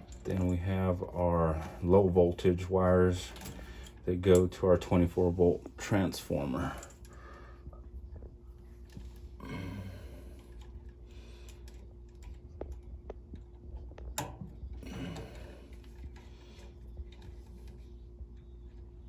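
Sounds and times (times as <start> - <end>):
steady low hum: 0.0 - 19.0
wires rustling: 10.2 - 19.0.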